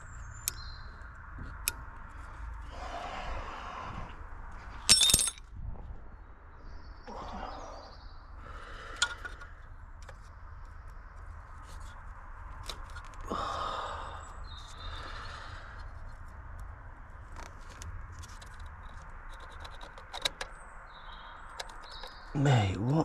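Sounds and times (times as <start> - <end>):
metallic tool clinks and knocks: 4.9 - 5.5.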